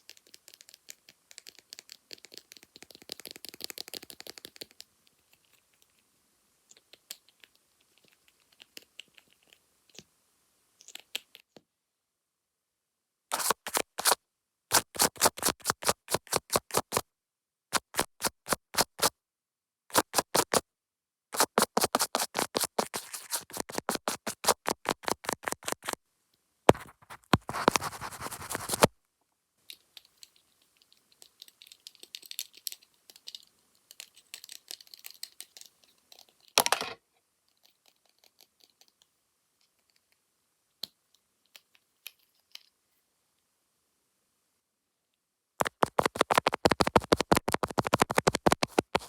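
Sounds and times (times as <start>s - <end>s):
scratchy rubbing: 13.3s - 17.0s, 17.7s - 19.1s, 19.9s - 20.6s, 21.4s - 26.0s, 26.7s - 28.9s, 45.6s - 49.0s
fast tapping on camera lens: 21.4s - 26.0s, 26.7s - 28.9s, 45.6s - 49.0s.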